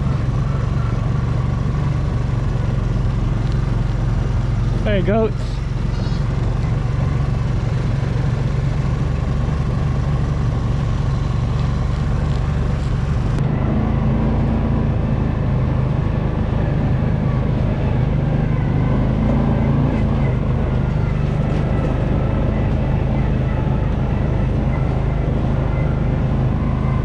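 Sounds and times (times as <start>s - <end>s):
vehicle engine humming: 0.0s - 27.0s.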